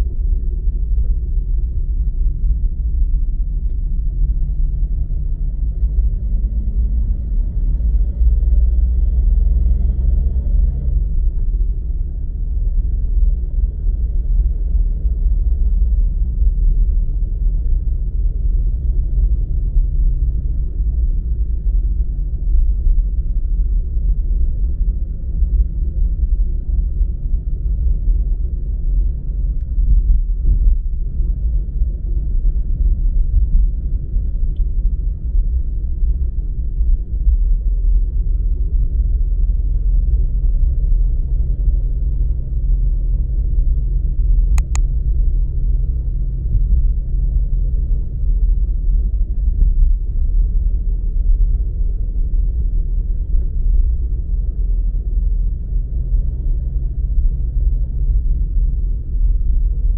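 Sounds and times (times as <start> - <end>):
car road and engine rumble: 0.0 - 59.9
sharp click: 44.6 - 44.9.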